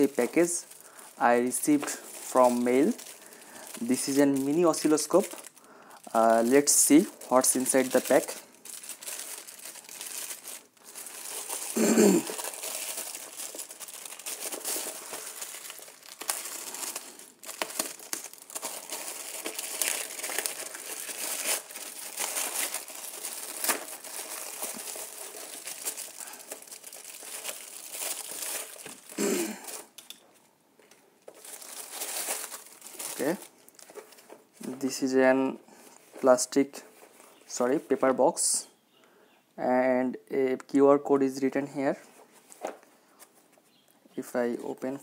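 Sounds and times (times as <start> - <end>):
package wrapping crinkling and tearing: 0.0 - 34.8.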